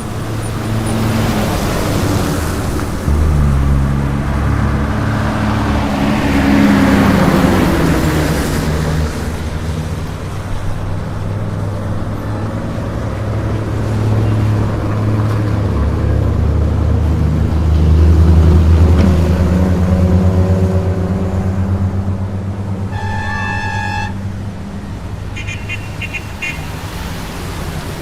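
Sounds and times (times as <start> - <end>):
highway traffic passing: 0.0 - 28.0
low engine drone: 0.0 - 28.0.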